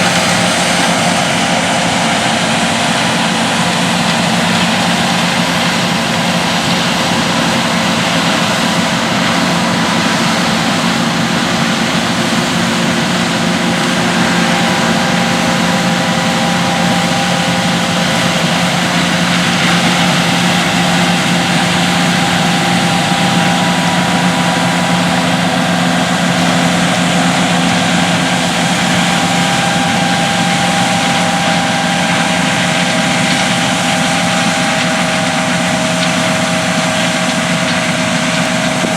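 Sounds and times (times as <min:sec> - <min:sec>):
combine harvester droning: 0:00.0 - 0:38.9
whining tones: 0:00.0 - 0:38.9.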